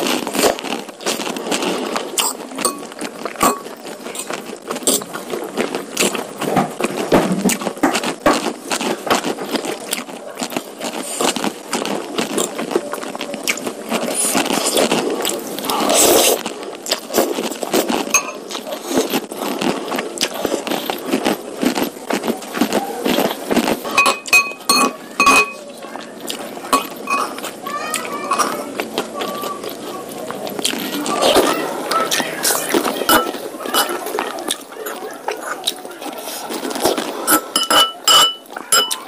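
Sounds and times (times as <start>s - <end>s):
wet chewing and mouth smacks: 0.0s - 25.4s, 26.0s - 39.0s
noisy slurp: 0.0s - 39.0s
metal utensil clinks: 37.6s - 39.0s.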